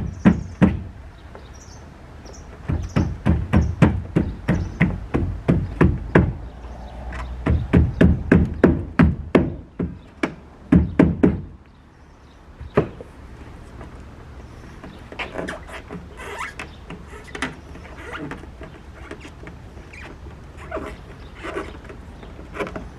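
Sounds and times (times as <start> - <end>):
rapid knocking: 2.6 - 6.6, 7.4 - 11.5.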